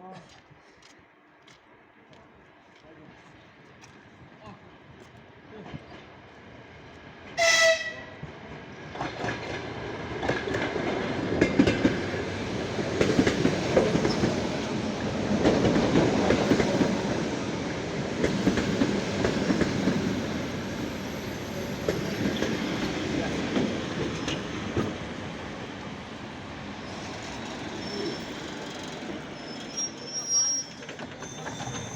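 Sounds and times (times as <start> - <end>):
train rumble: 2.6 - 29.4
train horn blast: 7.4 - 8.2.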